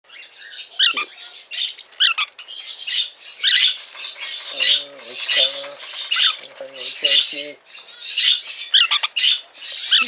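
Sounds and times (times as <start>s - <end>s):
parakeets chirping and squawking: 0.1s - 10.0s.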